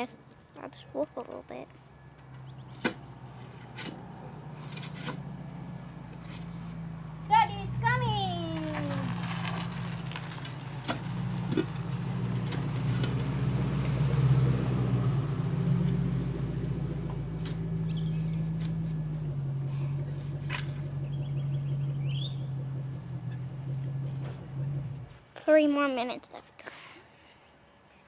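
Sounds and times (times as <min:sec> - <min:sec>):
birds chirping: 0:00.0 - 0:04.6, 0:17.1 - 0:25.0
car engine running: 0:01.7 - 0:25.3.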